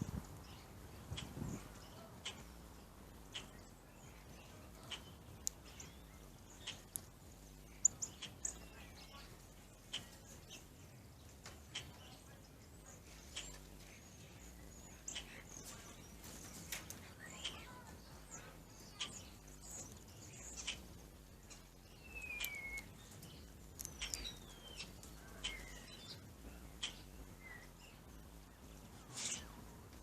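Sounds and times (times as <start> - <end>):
bird chips: 11.5 - 26.2, 29.0 - 29.6.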